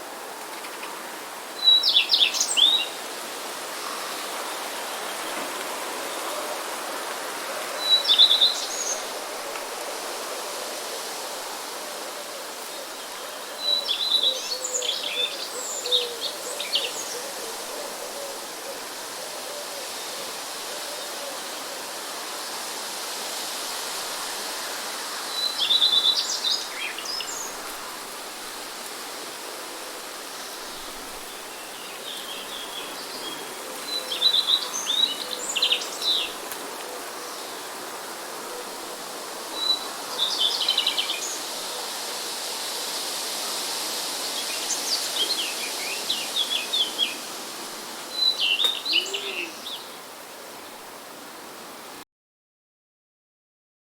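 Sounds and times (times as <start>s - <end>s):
background hiss: 0.0s - 52.0s
songbirds chirping and trilling: 30.4s - 38.4s.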